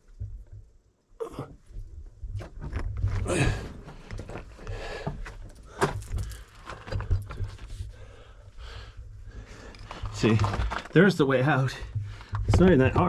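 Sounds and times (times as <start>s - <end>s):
body scraping against rock: 1.6s - 8.1s, 9.4s - 13.0s
breathing: 3.3s - 10.9s, 11.8s - 12.5s.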